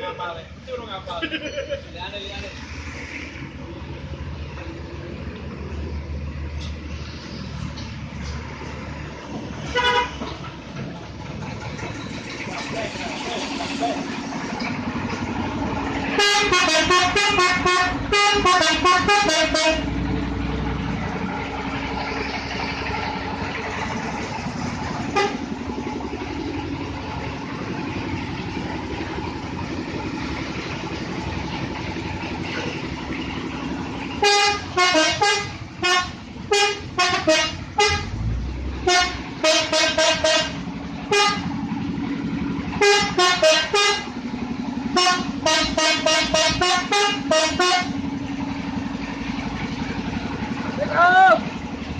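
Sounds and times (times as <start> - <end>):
steady engine hum: 0.0 - 51.9
multi-tone horn toots: 9.7 - 10.3, 16.1 - 19.9, 25.1 - 25.5, 34.2 - 38.2, 38.8 - 41.6, 42.8 - 44.1, 44.9 - 48.0.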